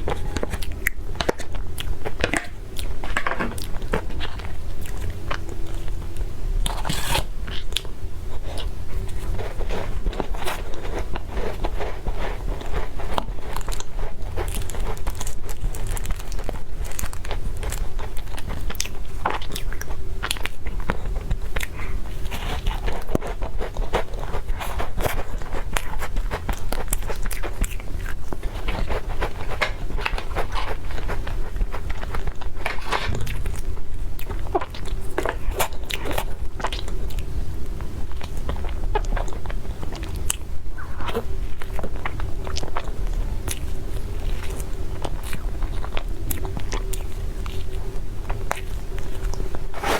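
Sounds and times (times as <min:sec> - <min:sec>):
person chewing food: 0:00.0 - 0:49.9.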